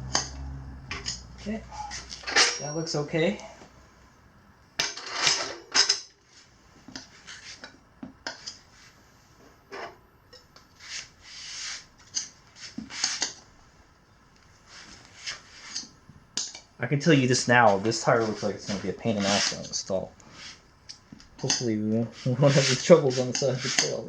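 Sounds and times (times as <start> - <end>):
rubbing and scraping on a tire: 0.0 - 2.3, 6.3 - 7.8, 10.7 - 13.4, 14.6 - 16.0, 17.2 - 20.7, 21.4 - 24.0.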